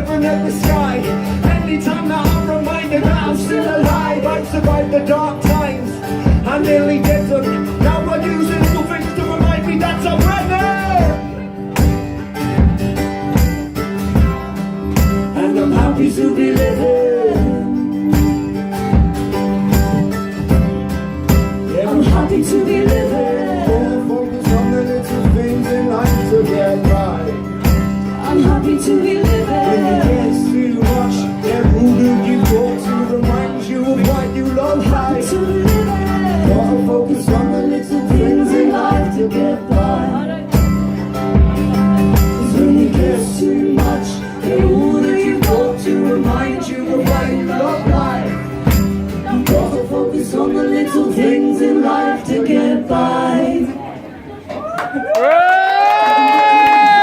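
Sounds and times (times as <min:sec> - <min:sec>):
people singing: 0:00.0 - 0:11.3, 0:14.1 - 0:19.9, 0:20.6 - 0:54.2
strummed acoustic guitars: 0:00.0 - 0:54.5
live band music: 0:00.0 - 0:54.7
steady beat: 0:18.2 - 0:52.2.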